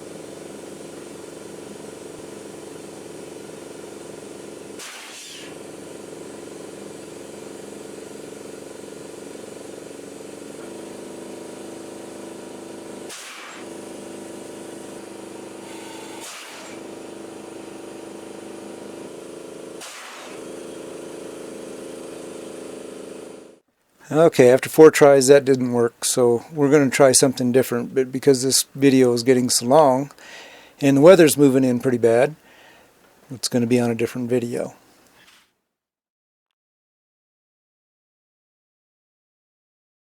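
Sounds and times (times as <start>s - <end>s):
engine running: 0.0s - 23.6s
short hissing bursts: 4.8s - 5.6s, 13.1s - 13.7s.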